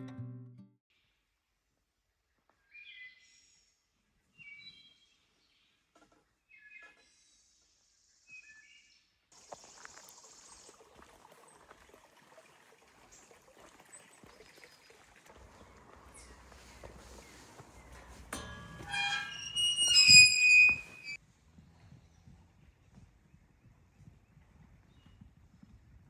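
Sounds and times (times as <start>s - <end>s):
songbirds chirping: 2.2s - 19.5s.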